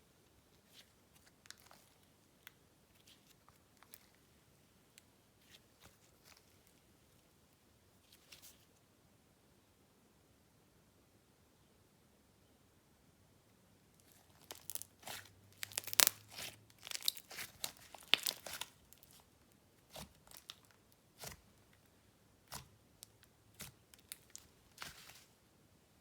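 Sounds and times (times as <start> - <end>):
slime clicking and popping: 14.3 - 18.7.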